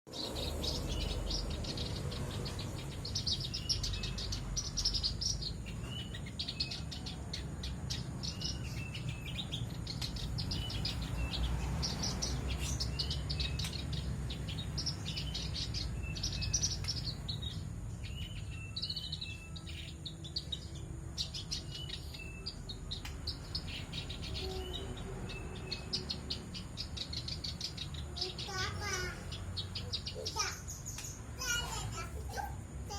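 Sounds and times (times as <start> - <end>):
warbler chattering song: 0.1 - 32.9.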